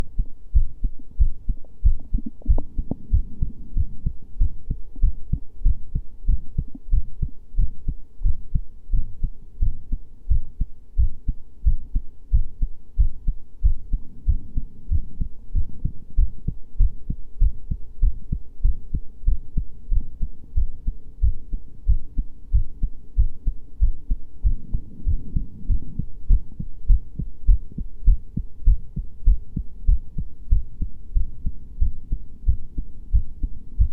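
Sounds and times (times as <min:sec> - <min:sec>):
heartbeat thumps: 0:00.0 - 0:33.9.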